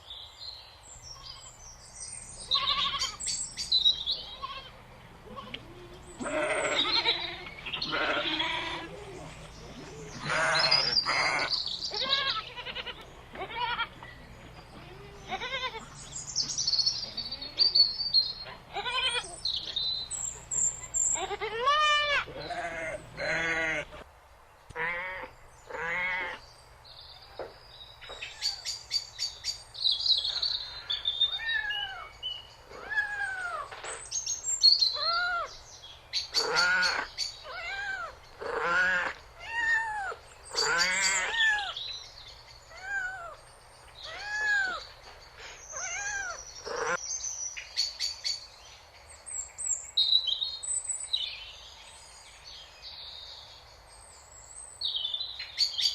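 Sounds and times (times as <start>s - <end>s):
animal calling: 2.4s - 24.0s, 30.2s - 33.8s, 34.9s - 35.6s, 36.2s - 41.8s, 42.7s - 47.0s.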